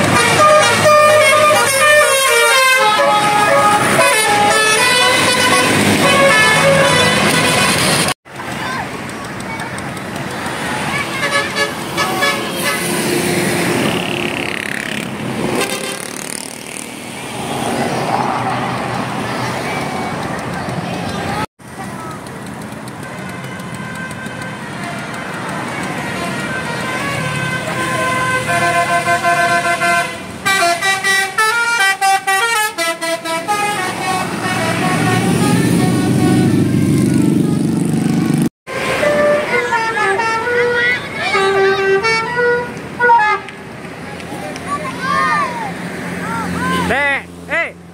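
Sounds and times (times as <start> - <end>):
multi-tone musical bus horn: 0.0 - 8.2, 11.0 - 13.2, 15.5 - 16.2, 23.0 - 37.3, 38.7 - 43.7
bus engine running: 0.0 - 17.0, 18.6 - 47.2.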